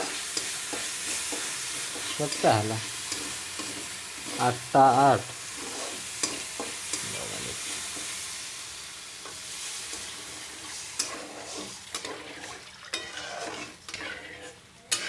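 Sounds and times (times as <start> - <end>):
lentils sizzling in a pan: 0.0 - 15.0.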